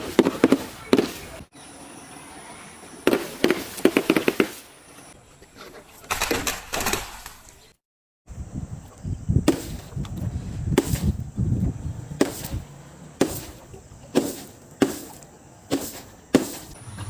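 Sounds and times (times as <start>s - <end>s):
sharp crunchy cracks: 5.4s - 7.8s, 9.4s - 11.3s, 12.1s - 17.0s.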